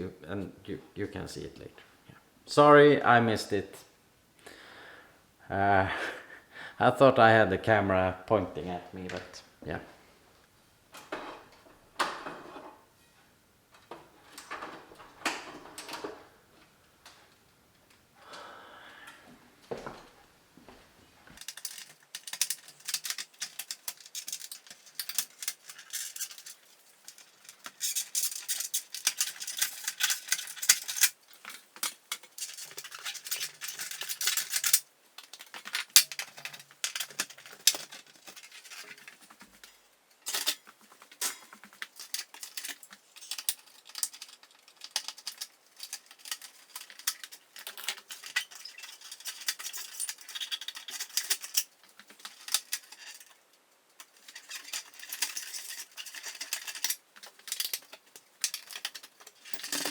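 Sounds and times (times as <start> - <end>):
metal light fixtures rattling: 13.8 - 16.3, 21.4 - 53.4, 54.0 - 59.9.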